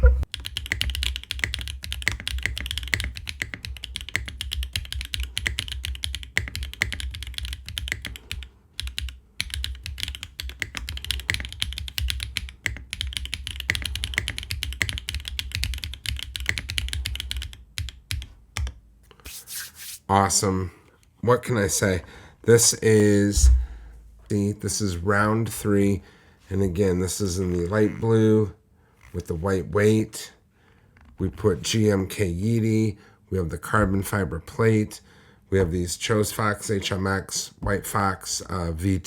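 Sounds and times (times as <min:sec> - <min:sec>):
mechanical keyboard typing: 0:00.0 - 0:18.8.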